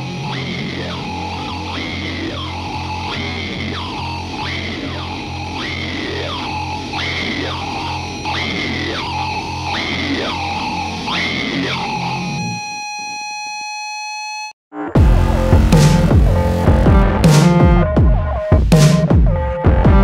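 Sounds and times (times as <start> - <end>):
rock band playing: 15.0 - 20.0.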